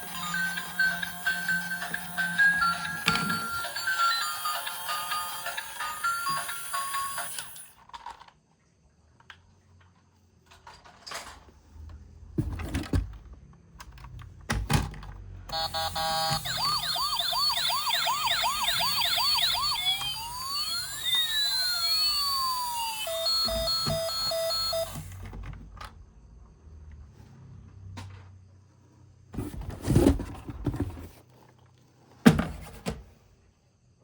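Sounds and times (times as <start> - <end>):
toy electronic siren: 0.0 - 7.7, 15.5 - 25.2.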